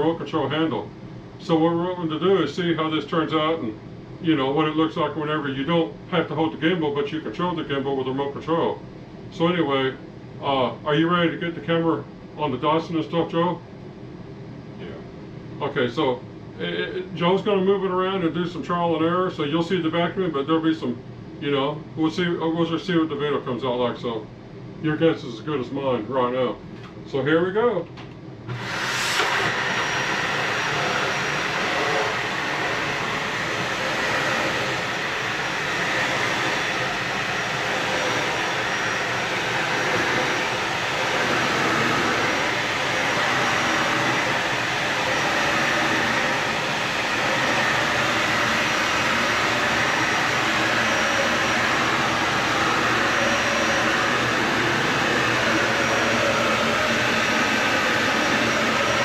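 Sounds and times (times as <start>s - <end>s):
vacuum cleaner running: 28.4s - 59.0s.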